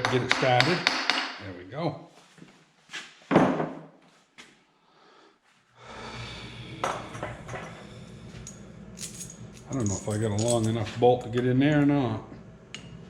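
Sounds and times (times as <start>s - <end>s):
steady low hum: 5.7s - 13.0s.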